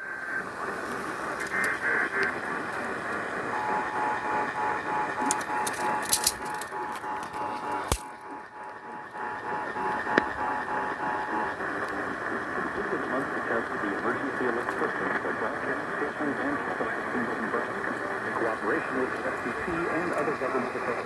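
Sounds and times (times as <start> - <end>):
radio static and hiss: 0.0 - 21.0
sharp clicks: 5.1 - 10.4.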